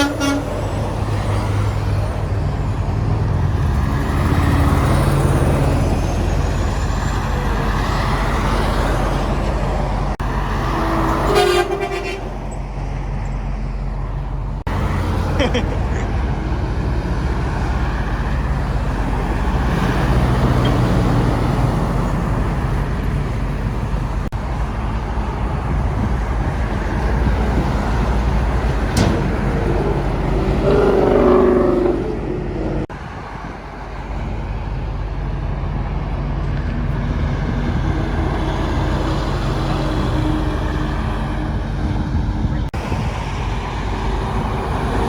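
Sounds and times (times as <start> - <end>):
multi-tone horn blast: 0.0 - 0.6, 10.7 - 12.4
highway traffic: 0.0 - 45.0.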